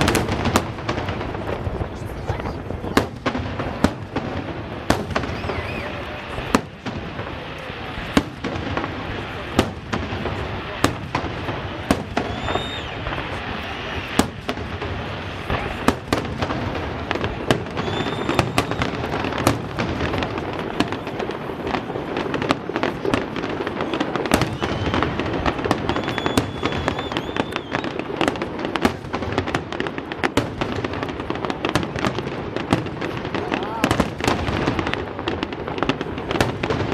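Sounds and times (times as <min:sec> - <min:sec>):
firework bangs: 0:00.0 - 0:36.9
high whistles: 0:05.2 - 0:06.0, 0:12.2 - 0:14.2, 0:17.7 - 0:19.0, 0:24.4 - 0:25.2, 0:25.8 - 0:28.0.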